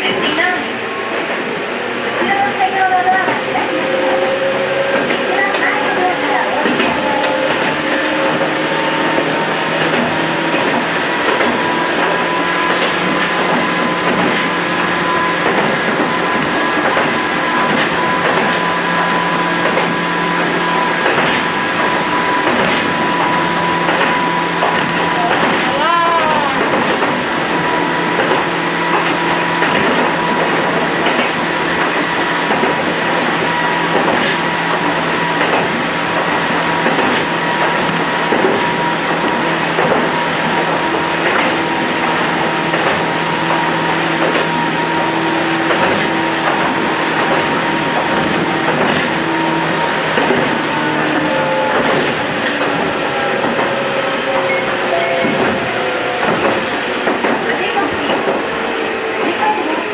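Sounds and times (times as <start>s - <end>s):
train motor whine: 0.0s - 59.9s
train track noise: 0.0s - 59.9s
wheels clicking over rails: 0.0s - 59.9s.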